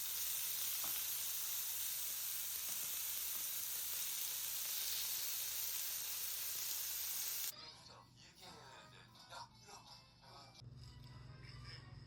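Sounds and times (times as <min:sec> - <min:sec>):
sizzling hiss: 0:00.0 - 0:07.5.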